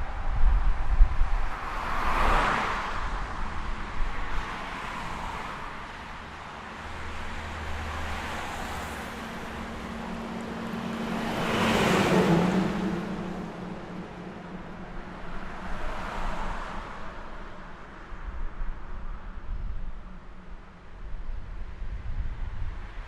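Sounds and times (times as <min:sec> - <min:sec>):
cars passing by: 0:00.0 - 0:23.0.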